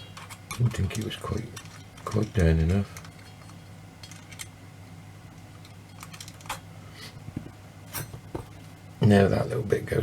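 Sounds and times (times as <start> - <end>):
small metal parts clicking: 0.0 - 4.5, 5.6 - 6.6
faint steady hum: 0.0 - 10.0.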